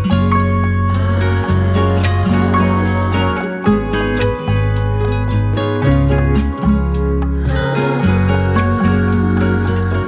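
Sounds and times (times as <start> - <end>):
calm new-age instrumental music: 0.0 - 10.0.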